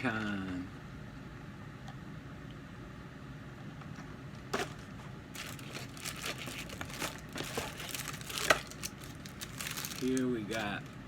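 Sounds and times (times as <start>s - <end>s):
low room hum: 0.0s - 11.0s
plastic packaging crinkling: 4.6s - 11.0s.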